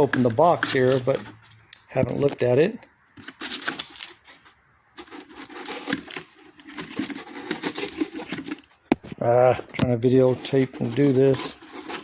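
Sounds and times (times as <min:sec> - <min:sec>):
cardboard box rustling: 0:03.2 - 0:04.4, 0:05.0 - 0:08.8, 0:09.9 - 0:12.0.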